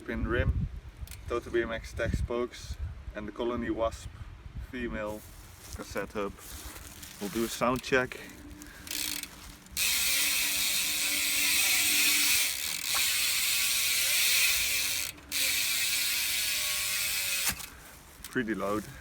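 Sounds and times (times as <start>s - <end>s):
freewheel ratchet buzzing: 8.6s - 19.0s.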